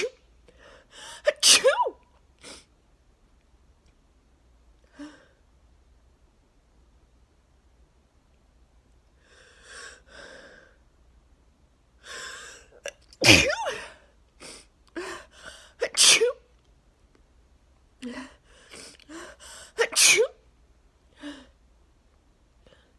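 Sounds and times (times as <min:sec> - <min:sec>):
woman sneezing: 0:00.0 - 0:00.2, 0:01.3 - 0:02.0, 0:13.2 - 0:13.9, 0:15.8 - 0:16.4, 0:19.8 - 0:20.4.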